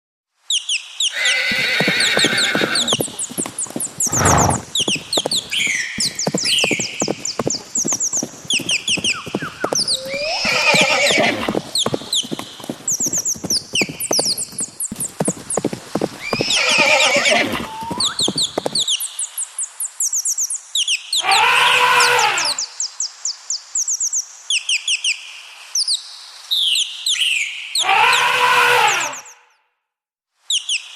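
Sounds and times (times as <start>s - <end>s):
horses whinnying: 1.1s - 3.1s, 4.0s - 4.8s, 9.2s - 11.8s, 16.2s - 18.3s, 21.2s - 22.6s, 27.8s - 29.4s
birds chirping: 1.1s - 19.2s
hooves clip-clopping on hard ground: 1.2s - 19.0s.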